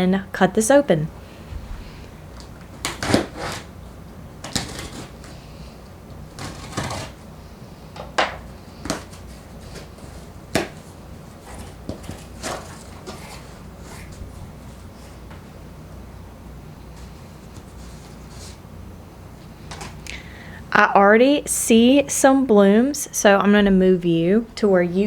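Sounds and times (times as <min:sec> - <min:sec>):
blade cutting tape and cardboard: 0:02.7 - 0:03.8, 0:04.4 - 0:05.4, 0:06.3 - 0:07.2, 0:08.8 - 0:14.2.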